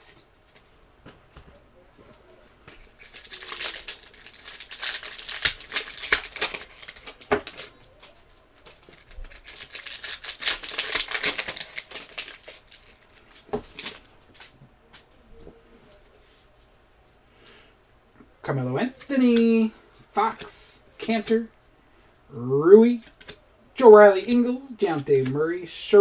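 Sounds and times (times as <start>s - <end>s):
cards being handled: 0.4s - 16.4s, 22.9s - 23.4s, 24.2s - 25.4s
wrappers crinkling and tearing: 2.7s - 15.1s.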